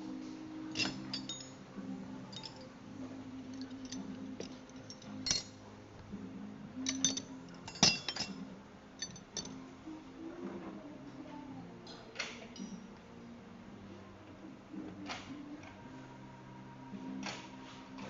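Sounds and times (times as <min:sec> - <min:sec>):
metal tools clinking: 0:00.7 - 0:01.6, 0:02.3 - 0:02.7, 0:03.4 - 0:05.6, 0:06.8 - 0:08.4, 0:09.0 - 0:09.6, 0:12.5 - 0:12.9.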